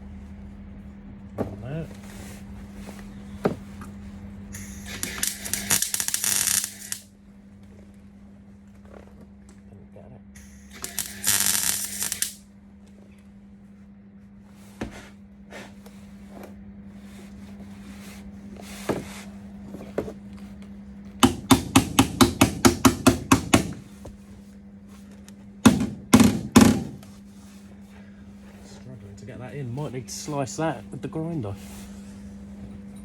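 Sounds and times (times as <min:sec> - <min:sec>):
steady low hum: 0:00.0 - 0:33.0
short hissing burst: 0:04.5 - 0:07.0, 0:10.4 - 0:12.4
hammer striking sheet steel: 0:21.2 - 0:23.8.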